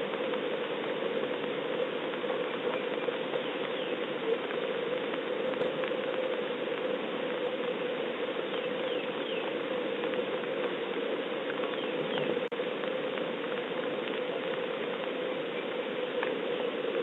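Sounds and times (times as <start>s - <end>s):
rain pattering: 0.0s - 17.0s
faint bird chirps: 11.7s - 12.4s.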